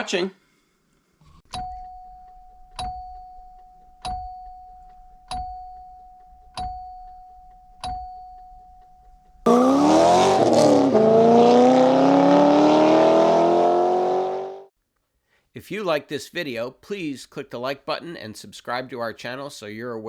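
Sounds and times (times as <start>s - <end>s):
car engine accelerating: 9.5s - 14.7s.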